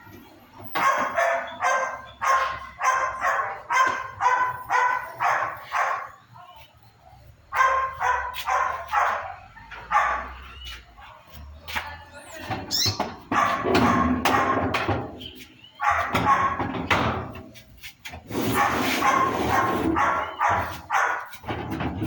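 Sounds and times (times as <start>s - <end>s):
dog barking: 0.8s - 6.7s, 7.5s - 11.4s, 13.3s - 14.8s, 15.8s - 16.7s, 18.5s - 21.4s.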